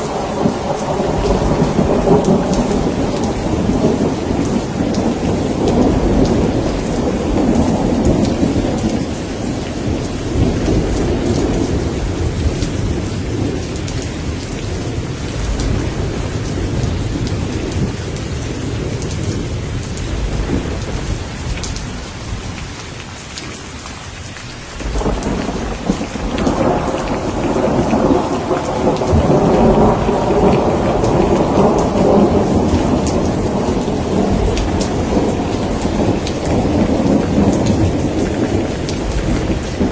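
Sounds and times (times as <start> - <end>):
rolling thunder: 0.0 - 22.8, 24.7 - 39.9
heavy rain: 0.0 - 39.9.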